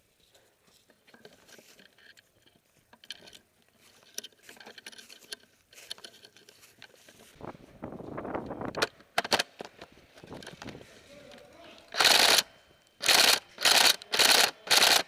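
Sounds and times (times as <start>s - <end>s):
faint footsteps: 0.0s - 8.7s.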